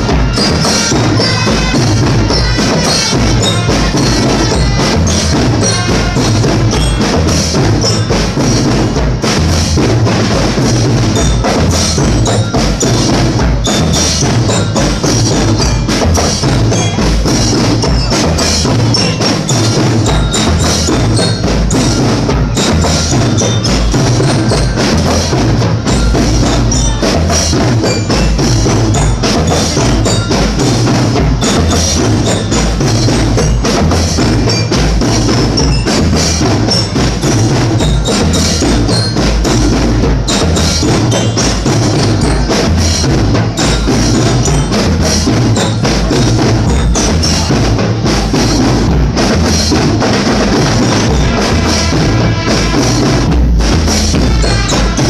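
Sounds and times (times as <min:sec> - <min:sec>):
percussion-driven music: 0:00.0 - 0:55.0.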